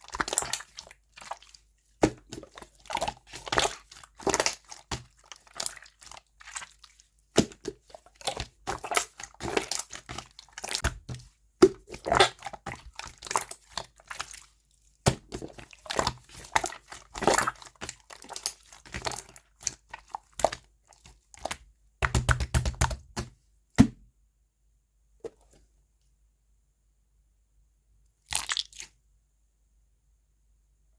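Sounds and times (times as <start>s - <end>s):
slime squeezed by hand: 28.3s - 29.0s.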